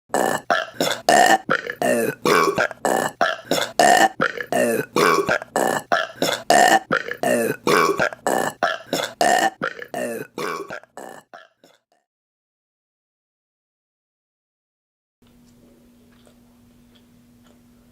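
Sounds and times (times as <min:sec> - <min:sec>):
women burping: 0:00.1 - 0:11.8.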